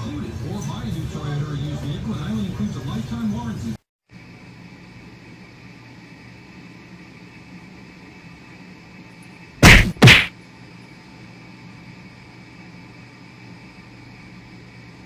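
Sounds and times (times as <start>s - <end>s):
loud thumps: 9.6s - 10.3s.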